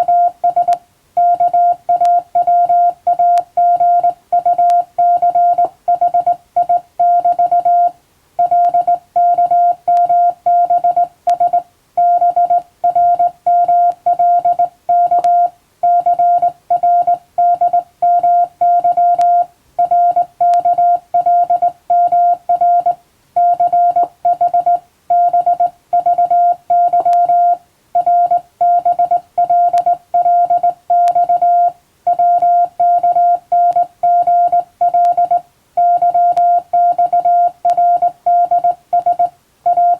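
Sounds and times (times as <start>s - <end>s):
morse code beeps: 0.0s - 39.9s.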